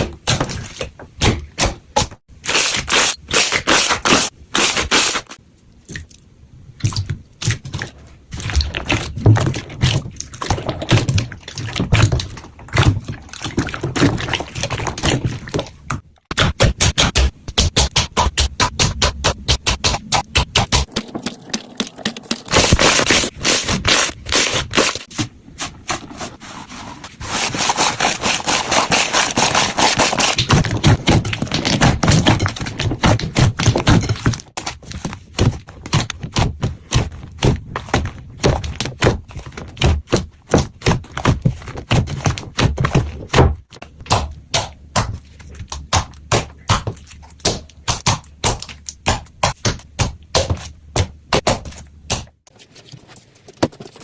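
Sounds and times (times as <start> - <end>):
hands squishing slime: 17.9 - 52.7.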